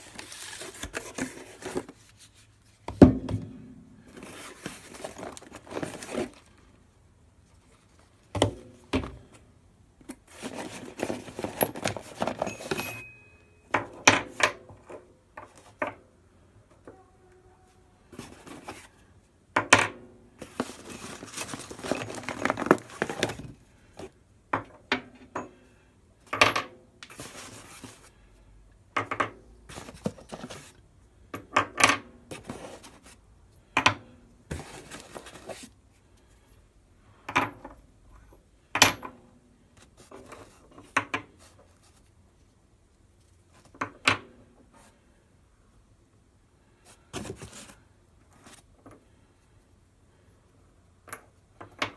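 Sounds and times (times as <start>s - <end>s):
rustling handling noise: 0.0s - 3.0s, 4.0s - 8.4s, 10.0s - 13.3s, 17.7s - 19.4s, 20.4s - 24.2s, 27.0s - 28.3s, 29.6s - 30.9s, 32.3s - 33.3s, 34.5s - 36.4s, 39.6s - 43.8s, 46.8s - 49.2s.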